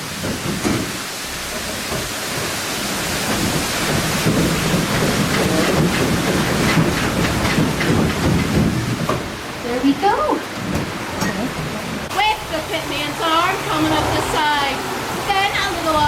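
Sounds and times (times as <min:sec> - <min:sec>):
sawmill machinery rattling: 0:00.0 - 0:09.9.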